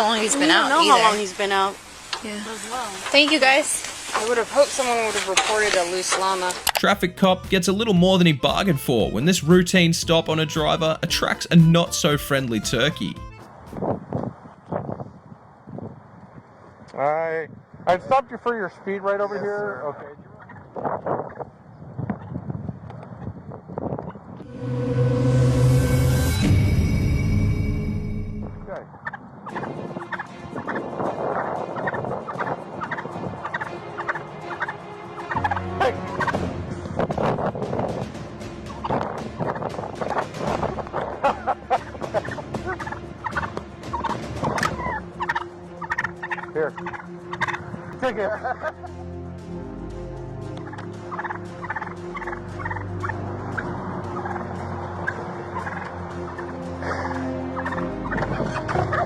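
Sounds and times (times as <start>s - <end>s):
turkey gobbling: 20.4s - 21.5s, 29.0s - 37.6s, 38.7s - 47.8s, 50.6s - 59.0s.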